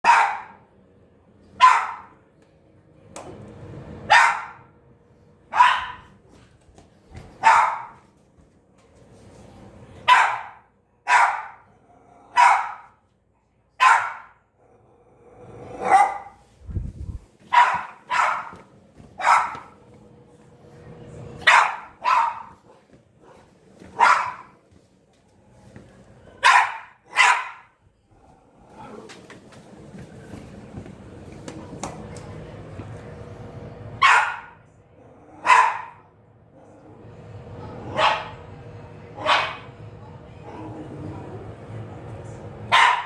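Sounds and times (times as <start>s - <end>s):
puppy barking: 0.0s - 0.6s, 1.6s - 2.2s, 4.1s - 4.7s, 5.5s - 6.2s, 7.4s - 8.0s, 10.1s - 11.6s, 12.3s - 13.0s, 13.8s - 14.4s, 15.8s - 16.4s, 17.5s - 19.8s, 21.4s - 22.8s, 23.8s - 24.6s, 26.4s - 27.7s, 34.0s - 34.6s, 35.4s - 36.0s, 37.9s - 38.4s, 39.2s - 39.7s, 42.7s - 43.0s.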